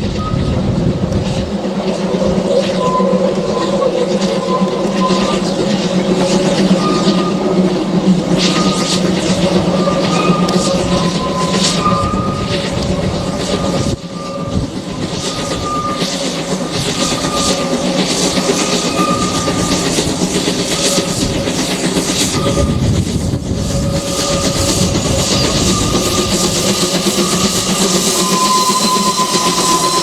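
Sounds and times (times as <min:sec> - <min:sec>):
carriages over rail joints: 0:00.0 - 0:30.0
steam locomotive exhaust: 0:00.0 - 0:30.0
short high squeals: 0:08.3 - 0:20.0, 0:23.8 - 0:30.0.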